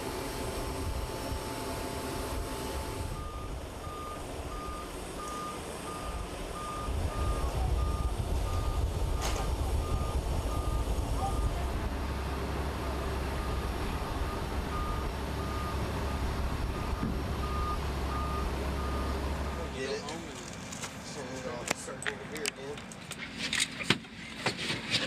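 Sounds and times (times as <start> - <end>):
heavy machinery rumble: 0.0 - 21.2
electronic warning beeper: 0.1 - 11.6.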